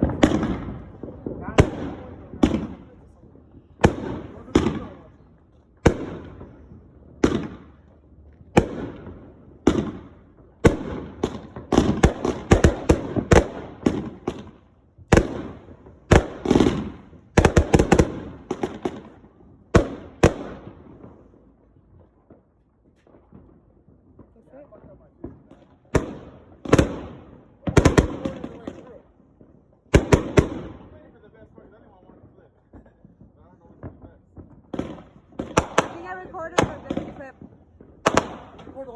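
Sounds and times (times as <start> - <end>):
firework bangs echoing: 0.0 - 38.9.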